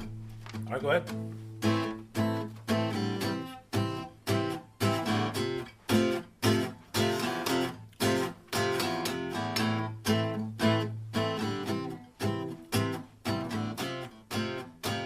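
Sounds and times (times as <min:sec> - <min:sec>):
acoustic guitar strummed: 0:00.0 - 0:15.0.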